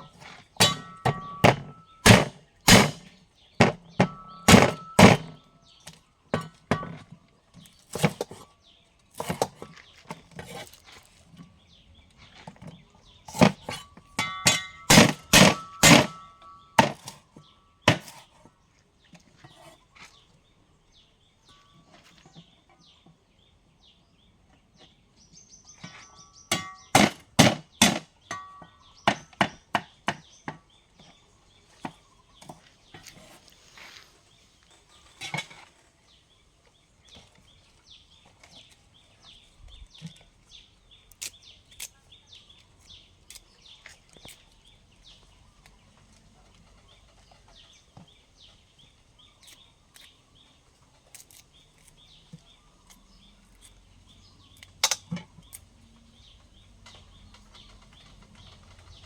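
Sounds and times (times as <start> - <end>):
knife chopping on wooden board: 17.9 - 18.2.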